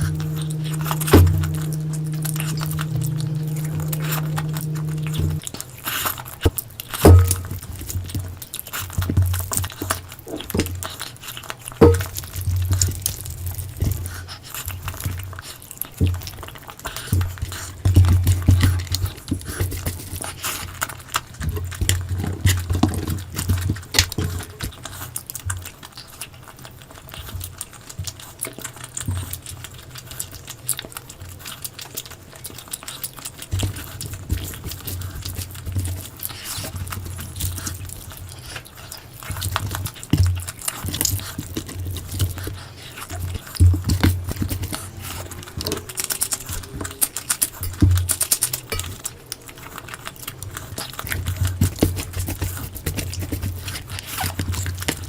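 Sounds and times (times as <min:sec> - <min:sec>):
wet chewing and smacking: 0:20.2 - 0:55.0.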